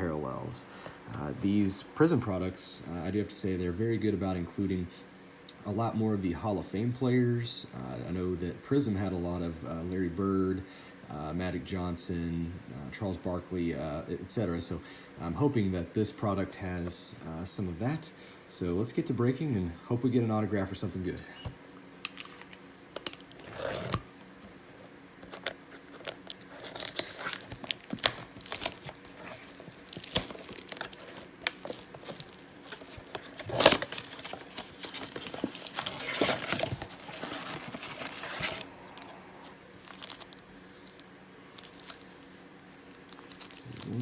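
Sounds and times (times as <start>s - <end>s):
plastic crinkling: 22.0s - 44.0s
cardboard box handling: 23.0s - 39.1s, 39.8s - 41.0s
plastic shrink wrap tearing: 23.0s - 39.1s, 39.8s - 42.2s, 42.8s - 44.0s.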